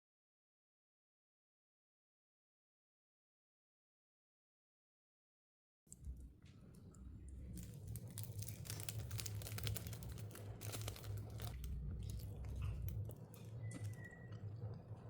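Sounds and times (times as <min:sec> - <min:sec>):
steady low hum: 0:06.0 - 0:15.0
packaging crinkling and crackling: 0:07.3 - 0:14.4.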